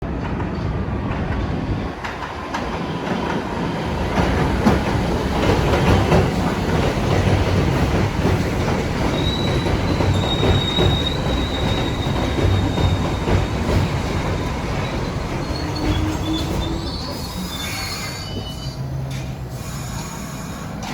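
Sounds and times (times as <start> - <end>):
train wheels rumbling and clattering: 0.0 - 20.9
high wheel squeal: 9.1 - 13.2, 14.8 - 20.9.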